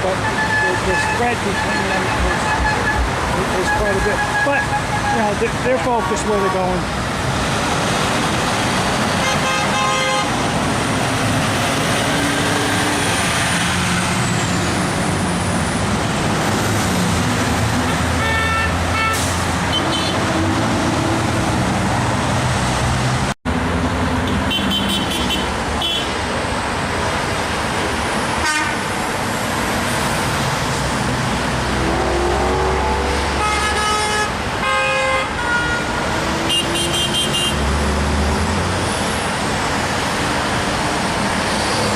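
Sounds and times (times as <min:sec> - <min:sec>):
car and truck horns honking: 0:00.0 - 0:06.9, 0:09.1 - 0:10.5, 0:17.9 - 0:20.7, 0:24.2 - 0:26.2, 0:28.4 - 0:29.0, 0:31.7 - 0:37.8
highway traffic passing: 0:00.0 - 0:41.9.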